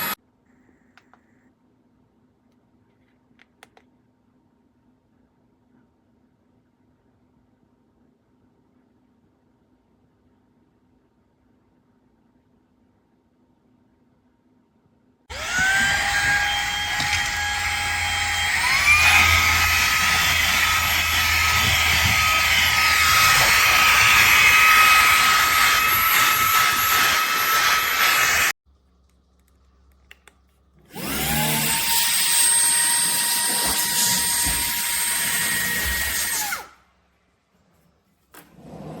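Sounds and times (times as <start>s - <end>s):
handheld vacuum motor whining: 15.3s - 28.6s, 30.9s - 36.8s.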